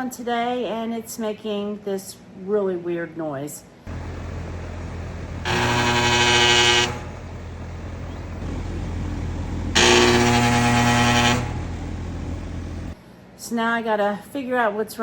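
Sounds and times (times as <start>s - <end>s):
air conditioner humming: 0.0s - 15.0s
loud pitched buzz: 3.9s - 13.0s.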